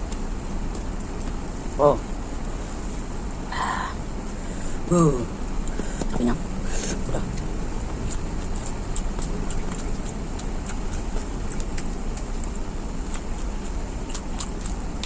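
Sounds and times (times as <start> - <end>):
chewing with mouth clicks: 0.0 - 1.8, 5.6 - 15.0
low background rumble: 0.0 - 15.0.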